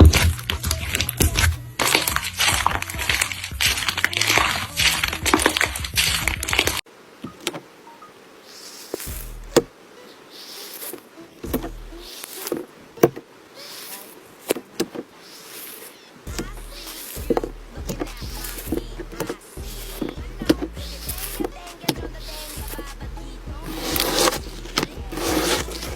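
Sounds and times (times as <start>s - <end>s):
music with bass line: 0.0s - 6.8s, 9.1s - 9.7s, 11.5s - 12.0s, 16.3s - 25.9s
slime crackling: 23.6s - 25.9s.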